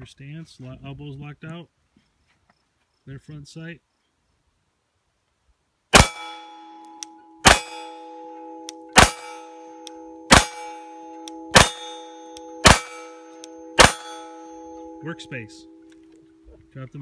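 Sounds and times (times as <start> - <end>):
pistol shots with metallic ring: 6.0 - 16.6.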